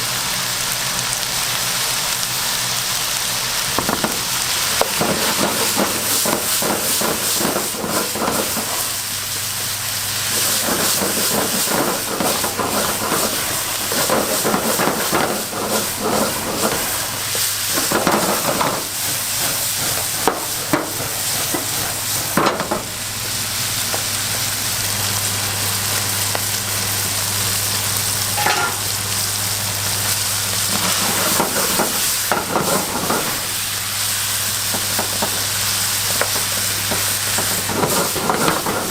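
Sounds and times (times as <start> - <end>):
food sizzling in a pan: 0.0 - 38.9
utensil scraping and tapping pan: 3.8 - 9.0, 10.3 - 22.9, 28.4 - 28.9, 30.7 - 33.6, 36.1 - 38.9.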